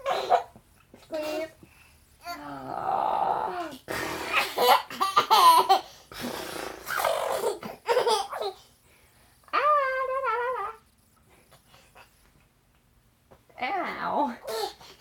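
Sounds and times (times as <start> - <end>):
toddler laughing: 7.0 - 8.6.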